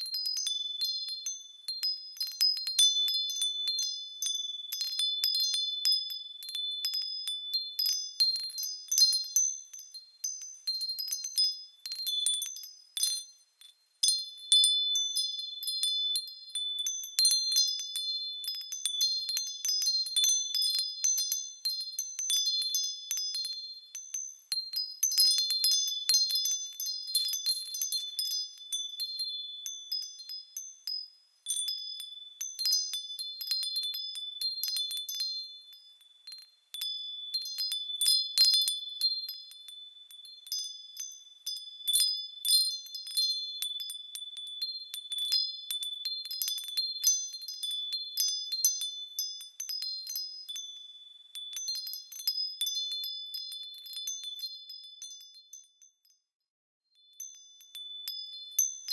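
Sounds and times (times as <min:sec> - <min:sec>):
small metal bells tinkling: 0:00.0 - 0:58.9.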